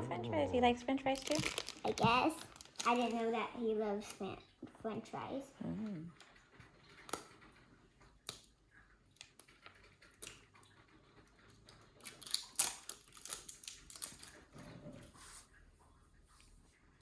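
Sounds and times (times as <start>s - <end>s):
packaging crinkling: 1.2s - 3.3s, 12.0s - 14.4s
plastic pieces clicking: 1.2s - 3.3s, 6.8s - 14.5s.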